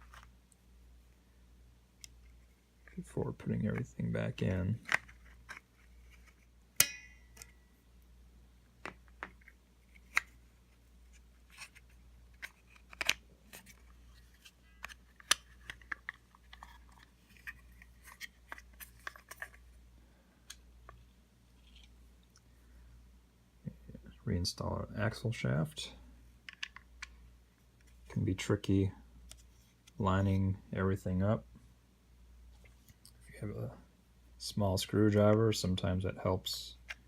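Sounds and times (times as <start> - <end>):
sharp ringing clink: 6.8 - 7.3.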